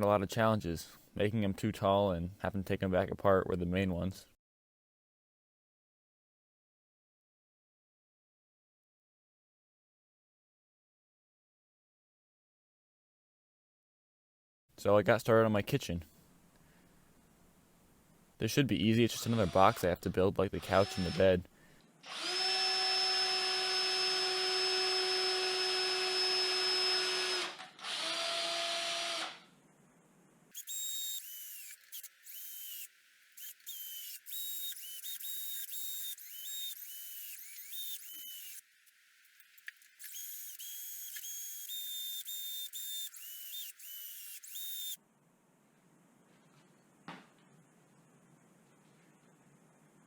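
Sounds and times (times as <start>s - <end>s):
power drill whining: 20.6s - 21.4s, 22.0s - 29.5s, 30.6s - 45.0s.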